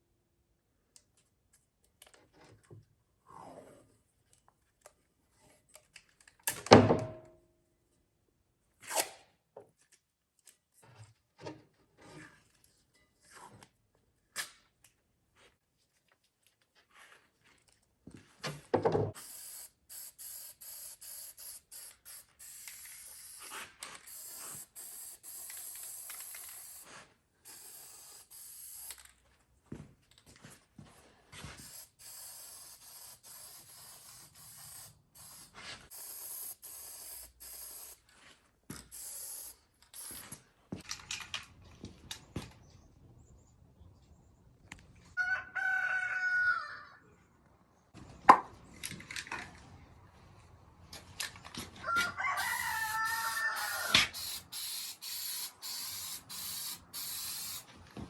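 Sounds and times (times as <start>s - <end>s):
aerosol spray can hissing: 19.2s - 26.9s, 27.5s - 29.0s, 31.6s - 38.0s, 38.9s - 40.2s, 52.6s - 57.7s
knocks and handling clatter: 40.8s - 42.7s.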